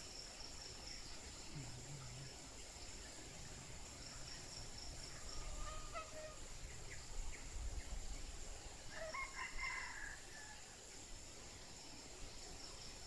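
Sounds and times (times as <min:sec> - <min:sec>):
rooster crowing: 0:08.9 - 0:10.6.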